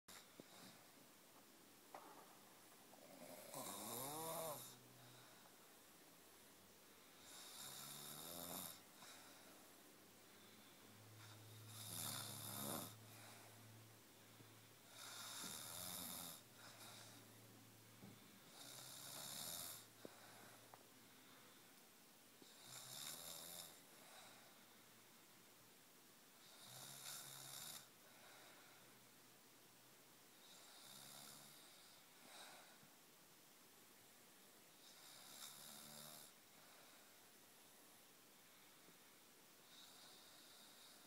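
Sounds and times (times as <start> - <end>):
person snoring: 3.0 - 5.2, 7.2 - 9.2, 11.2 - 13.4, 14.9 - 17.2, 18.5 - 20.0, 22.4 - 23.8.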